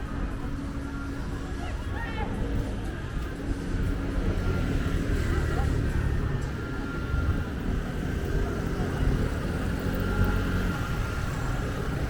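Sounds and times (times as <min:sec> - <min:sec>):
city street low rumble: 0:00.0 - 0:12.0.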